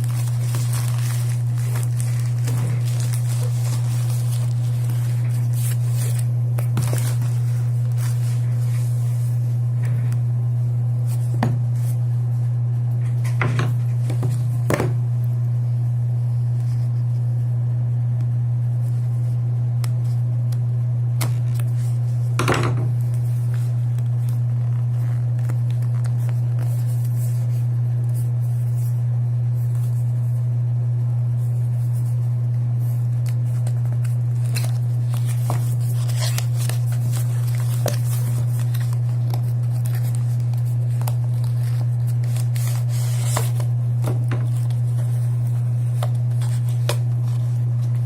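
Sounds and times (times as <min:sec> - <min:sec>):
packaging being handled: 0:00.0 - 0:09.3, 0:33.1 - 0:48.0
steady low hum: 0:00.0 - 0:48.0.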